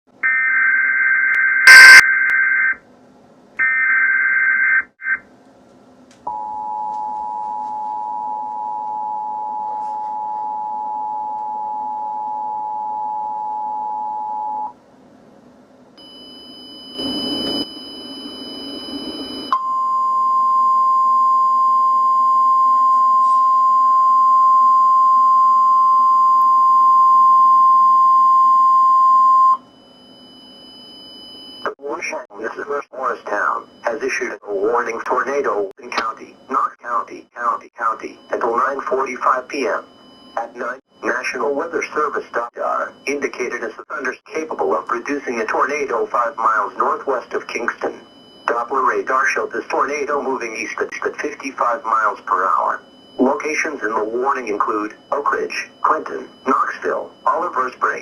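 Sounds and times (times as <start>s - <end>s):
single-tone warning alarm: 0.2s - 2.8s, 3.6s - 5.2s, 6.3s - 14.8s, 16.0s - 31.8s, 37.8s - 43.6s, 44.9s - 58.0s
two-tone attention signal: 1.6s - 2.2s, 16.0s - 31.7s
faint high beeps: 1.7s - 2.1s, 16.0s - 31.2s.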